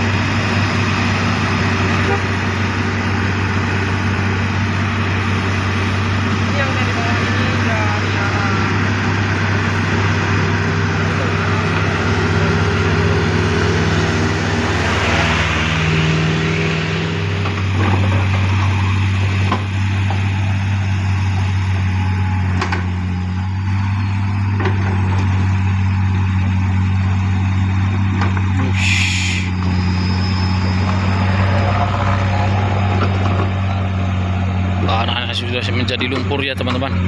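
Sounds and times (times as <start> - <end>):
diesel engine humming: 0.0 - 37.0
brief hiss: 28.8 - 29.5.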